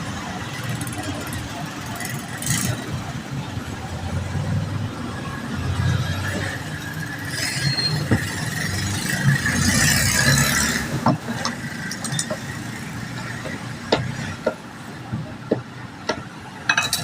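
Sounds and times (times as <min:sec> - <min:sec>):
tools and parts clicking: 0:11.1 - 0:14.6, 0:16.1 - 0:17.0.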